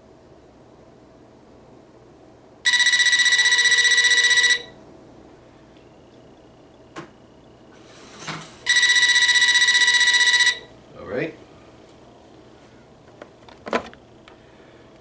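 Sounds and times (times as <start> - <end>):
cordless phone ringing: 2.7 - 4.8, 8.6 - 10.8.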